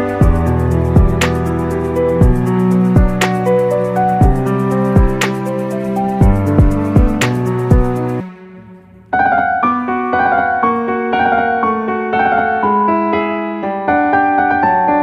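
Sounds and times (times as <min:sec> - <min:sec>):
music with a beat: 0:00.0 - 0:11.6
piano melody: 0:00.0 - 0:15.0.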